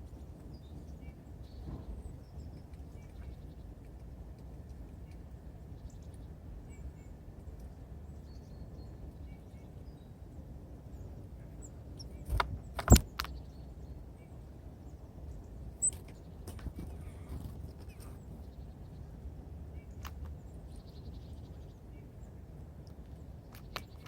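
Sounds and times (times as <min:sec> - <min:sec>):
low outdoor rumble: 0:00.0 - 0:24.0
small birds calling: 0:10.9 - 0:22.4.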